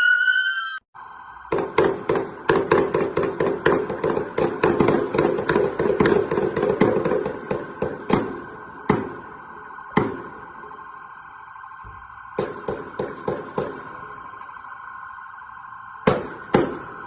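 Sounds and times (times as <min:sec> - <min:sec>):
steady held tone: 0:00.0 - 0:17.0
rapid gunfire: 0:01.5 - 0:09.2.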